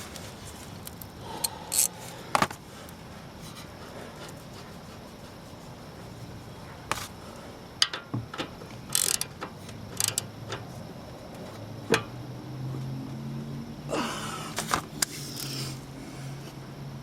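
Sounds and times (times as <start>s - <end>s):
socket ratchet clicking: 1.7s - 1.9s, 8.9s - 10.3s.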